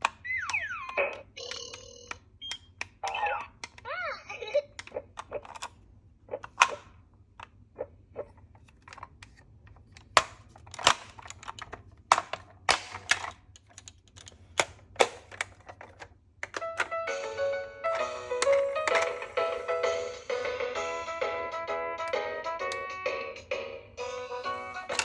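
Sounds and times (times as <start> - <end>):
background music: 16.6 - 25.0.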